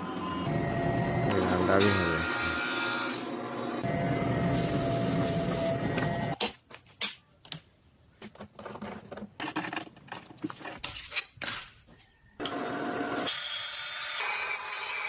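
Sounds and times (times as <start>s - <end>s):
small power tool whining: 0.0s - 4.2s.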